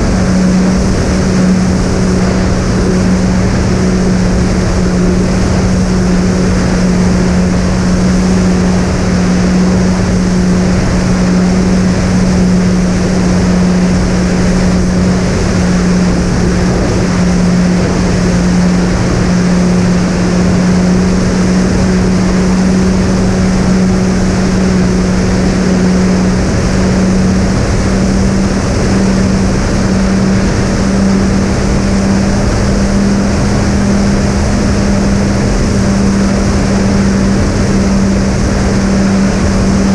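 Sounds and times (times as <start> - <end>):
propeller air rush: 0.0 - 39.9.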